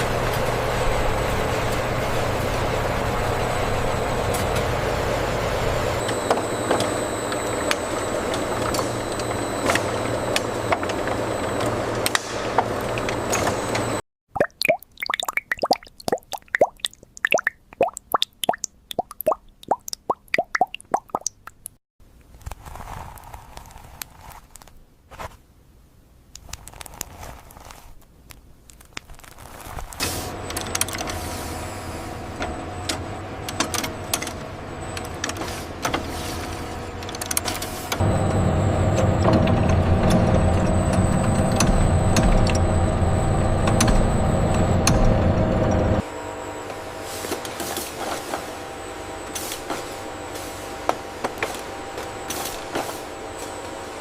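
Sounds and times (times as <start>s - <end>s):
machinery clicks and clatter: 30.0s - 31.2s, 32.4s - 46.0s
steady machine hum: 37.8s - 54.0s.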